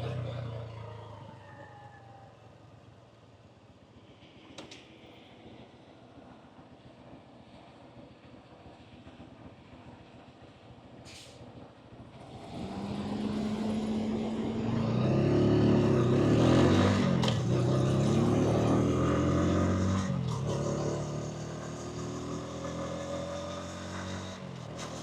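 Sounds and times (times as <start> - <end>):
motorcycle engine accelerating: 0.0 - 1.2, 12.1 - 25.0
road and wind hiss: 0.0 - 25.0.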